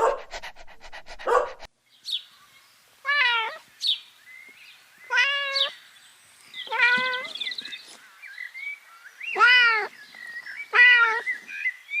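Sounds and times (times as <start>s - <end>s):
kittens meowing: 9.4s - 9.9s, 10.7s - 11.3s.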